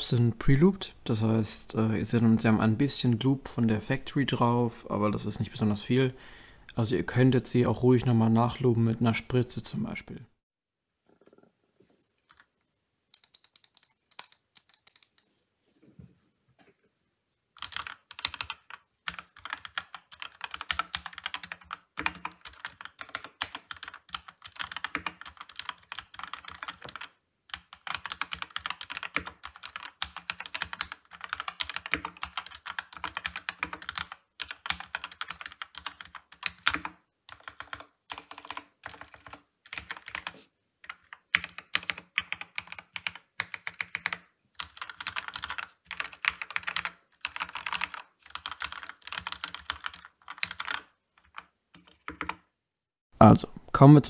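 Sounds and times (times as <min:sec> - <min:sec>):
typing on mechanical keyboard: 0:13.2 - 0:15.2, 0:17.6 - 0:52.5.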